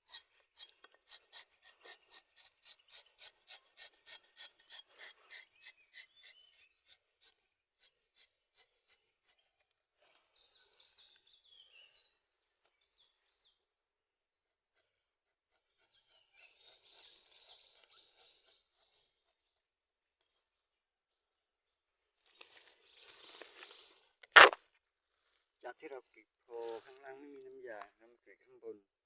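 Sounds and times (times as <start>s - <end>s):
bird chirping: 0.0s - 13.6s, 15.6s - 19.6s
knife scraping tree bark: 0.1s - 9.4s, 24.4s - 24.6s.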